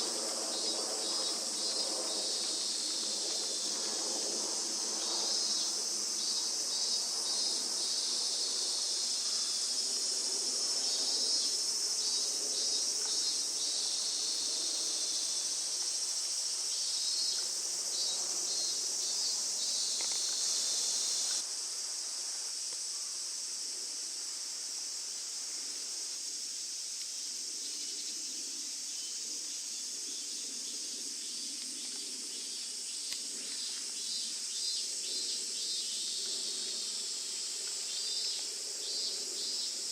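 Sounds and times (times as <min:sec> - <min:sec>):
rapid insect chirping pulses: 0:00.0 - 0:21.5, 0:25.6 - 0:39.9
insects shrilling: 0:04.5 - 0:21.4.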